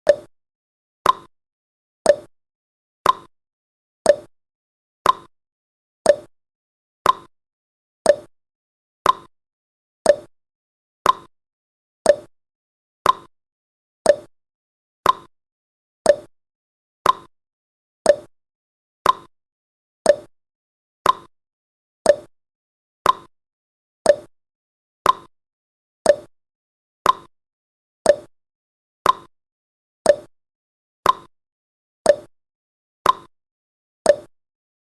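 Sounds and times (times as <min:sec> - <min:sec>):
timer ticking: 0:00.0 - 0:00.3, 0:01.0 - 0:01.3, 0:02.1 - 0:02.3, 0:03.0 - 0:03.3, 0:04.1 - 0:04.3, 0:05.0 - 0:05.3, 0:06.1 - 0:06.3, 0:07.0 - 0:07.3, 0:08.1 - 0:08.3, 0:09.0 - 0:09.3, 0:10.0 - 0:10.3, 0:11.0 - 0:11.3, 0:12.0 - 0:12.3, 0:13.0 - 0:13.3, 0:14.0 - 0:14.3, 0:15.0 - 0:15.3, 0:16.1 - 0:16.3, 0:17.0 - 0:17.3, 0:18.1 - 0:18.3, 0:19.0 - 0:19.3, 0:20.1 - 0:20.3, 0:21.0 - 0:21.3, 0:22.1 - 0:22.3, 0:23.0 - 0:23.3, 0:24.1 - 0:24.3, 0:25.0 - 0:25.3, 0:26.0 - 0:26.3, 0:27.0 - 0:27.3, 0:28.1 - 0:28.3, 0:29.0 - 0:29.3, 0:30.1 - 0:30.3, 0:31.0 - 0:31.3, 0:32.1 - 0:32.3, 0:33.0 - 0:33.3, 0:34.1 - 0:34.3.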